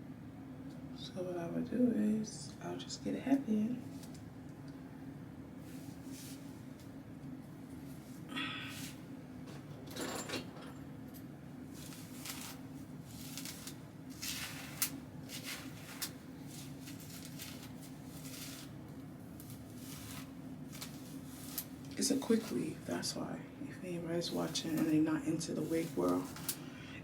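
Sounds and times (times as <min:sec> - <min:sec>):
steady low hum: 0:00.0 - 0:27.0
handling rustles and clicks: 0:09.5 - 0:22.7.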